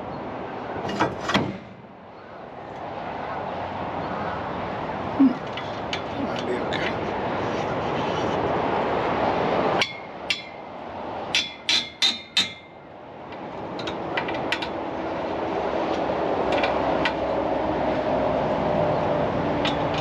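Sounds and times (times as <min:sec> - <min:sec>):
steady background noise: 0:00.0 - 0:20.0
sharp metallic knocks: 0:09.8 - 0:10.7, 0:11.3 - 0:12.8.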